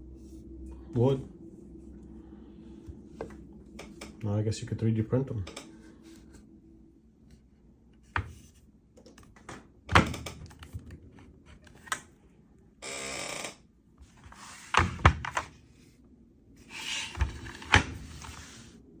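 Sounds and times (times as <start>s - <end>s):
plastic box scraping slide: 14.1s - 14.9s, 16.6s - 18.8s.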